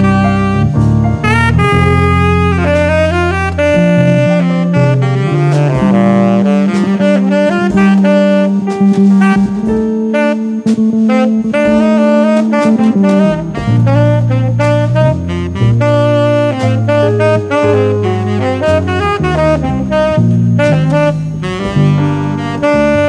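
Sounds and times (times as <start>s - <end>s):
drum hits: 0.0s - 23.0s
quick melody line: 0.0s - 23.0s
sustained bass line: 0.0s - 23.0s.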